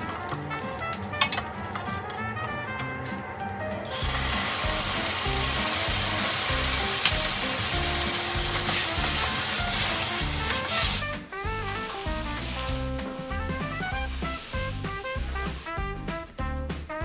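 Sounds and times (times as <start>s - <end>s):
background music: 0.0s - 17.0s
food sizzling in a frying pan: 3.0s - 11.1s.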